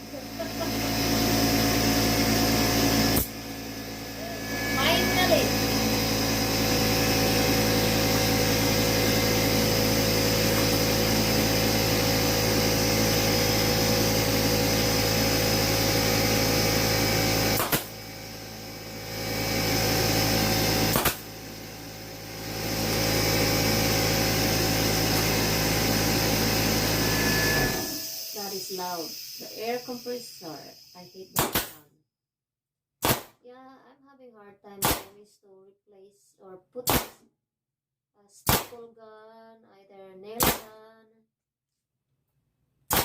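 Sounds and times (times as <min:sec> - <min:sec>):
air compressor running: 0:00.0 - 0:31.6.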